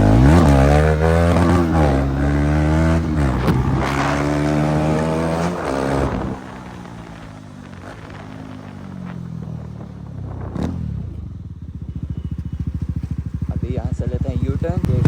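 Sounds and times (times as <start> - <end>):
motorcycle engine revving: 0.0 - 15.0.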